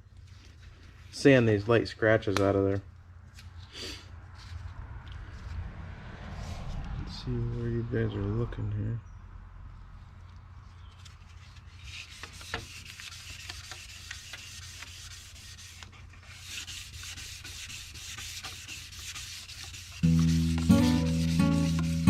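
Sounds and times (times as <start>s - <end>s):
sandpaper rubbing on metal: 11.4s - 22.0s.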